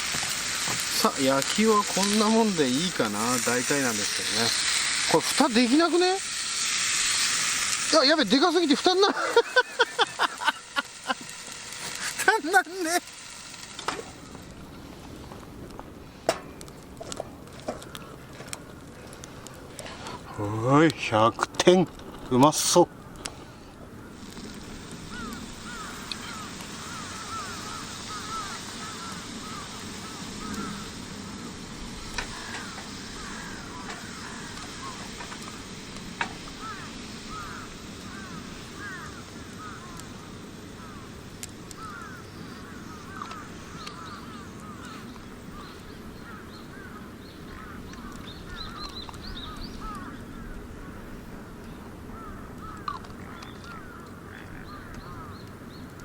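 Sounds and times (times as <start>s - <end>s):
campfire hissing: 0.0s - 56.0s
fire crackling pops: 0.0s - 56.0s
short chirping calls: 22.2s - 31.5s, 36.4s - 50.3s.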